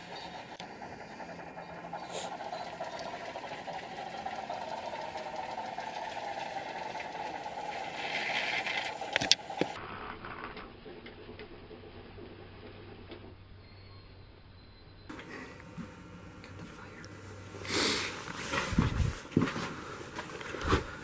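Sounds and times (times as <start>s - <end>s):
model train motor whirring: 0.0s - 13.9s
low hum: 0.0s - 17.7s.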